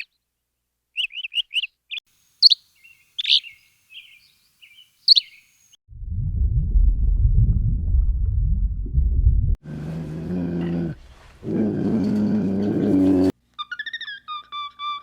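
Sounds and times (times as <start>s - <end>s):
animal growling: 9.6s - 13.4s.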